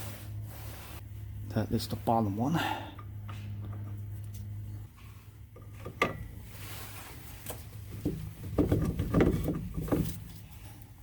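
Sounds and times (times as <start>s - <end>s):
bolt knocking and rattling: 7.9s - 10.3s.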